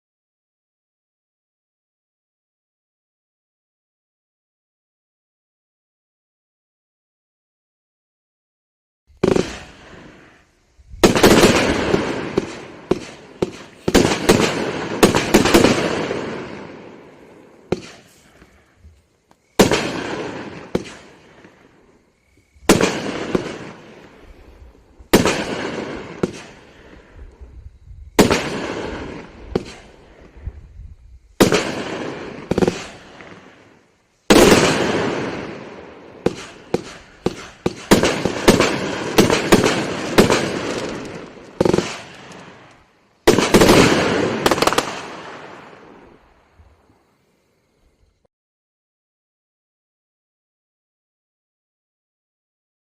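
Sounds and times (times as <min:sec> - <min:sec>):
crackling firework pops: 0:09.1 - 0:10.4, 0:11.0 - 0:24.2, 0:25.1 - 0:27.5, 0:28.1 - 0:30.4, 0:31.4 - 0:46.0
firework shells launching and bursting: 0:09.1 - 0:27.1, 0:31.4 - 0:45.8.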